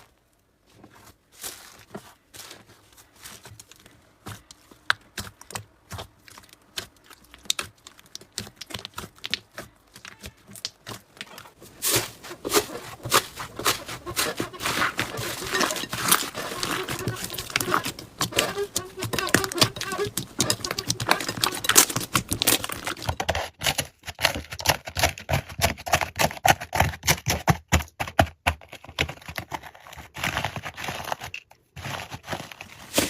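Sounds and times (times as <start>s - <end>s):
slime clicking and crackling: 4.4s - 11.3s, 14.1s - 23.2s.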